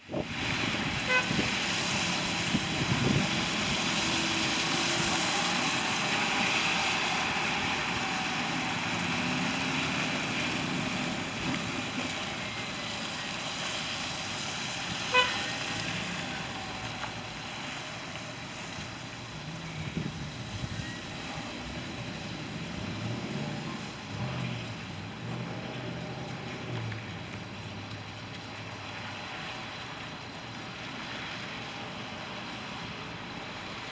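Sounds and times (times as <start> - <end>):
passing road vehicles: 0.0 - 33.9
car horn beep: 1.1 - 1.4, 15.1 - 15.6.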